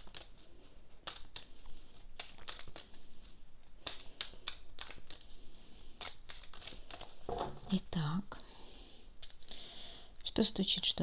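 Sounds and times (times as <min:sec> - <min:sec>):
cards snapping and rustling: 0:00.0 - 0:07.7, 0:09.2 - 0:09.6.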